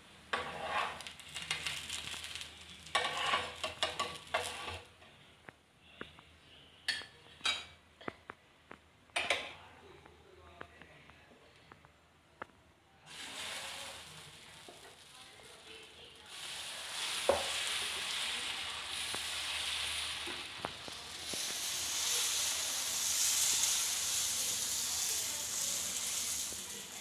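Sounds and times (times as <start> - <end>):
batter sizzling on a griddle: 0.0 - 5.0, 13.0 - 27.0.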